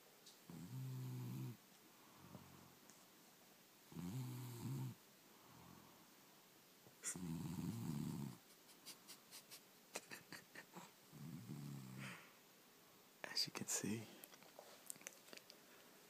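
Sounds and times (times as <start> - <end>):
loud rumbling snores: 0.5 - 1.6, 3.9 - 5.0, 7.1 - 8.4, 11.2 - 12.0
faint breath: 12.0 - 12.4.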